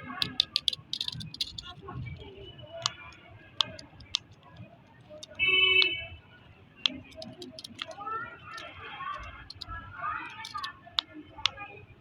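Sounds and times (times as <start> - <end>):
toy clicks: 0.0 - 2.0, 2.8 - 5.4, 6.9 - 11.1.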